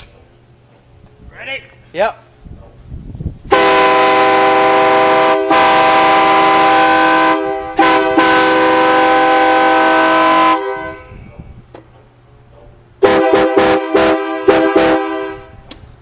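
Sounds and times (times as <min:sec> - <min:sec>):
train horn chord: 0:03.5 - 0:11.2, 0:13.0 - 0:15.6.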